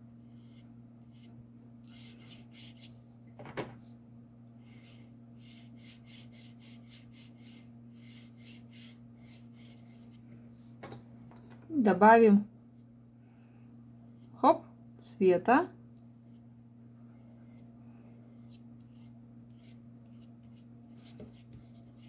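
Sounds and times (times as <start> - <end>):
paintbrush scrubbing on paper: 0.2 - 3.0, 4.7 - 10.2, 18.3 - 22.0.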